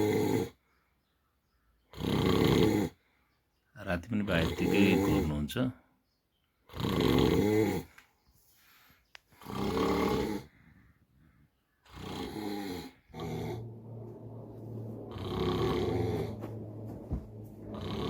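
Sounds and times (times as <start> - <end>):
man snoring loudly: 0.0 - 0.6, 1.9 - 3.0, 4.2 - 5.4, 6.7 - 7.9, 9.4 - 10.5, 11.9 - 14.4, 15.1 - 16.4, 17.7 - 18.0.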